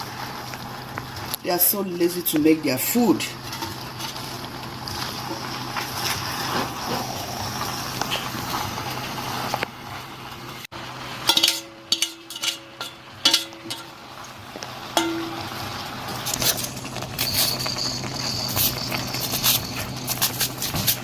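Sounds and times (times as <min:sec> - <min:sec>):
utensils clinking on dishes: 0:11.2 - 0:14.0, 0:15.0 - 0:21.0.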